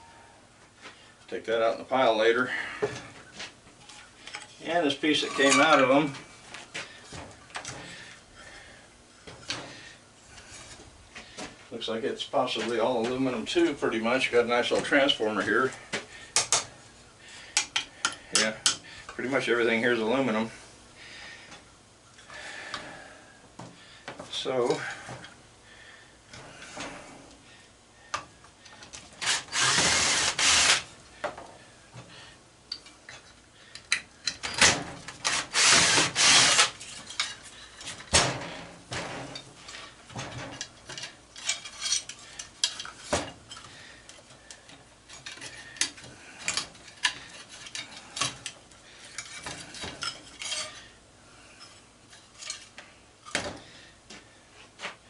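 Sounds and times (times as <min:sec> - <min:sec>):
metal clinks and scrapes: 0:03.8 - 0:06.2, 0:36.5 - 0:38.1, 0:39.0 - 0:53.4
loud metal rasping: 0:29.2 - 0:30.8, 0:35.2 - 0:36.9.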